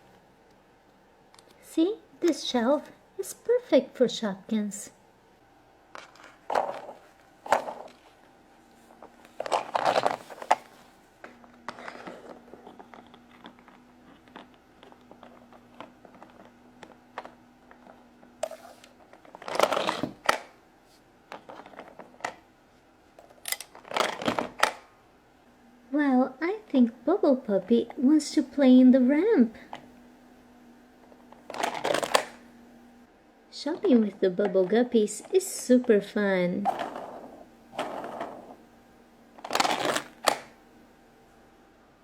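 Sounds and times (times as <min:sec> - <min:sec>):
plastic toys clicking and knocking: 0:39.4 - 0:40.5.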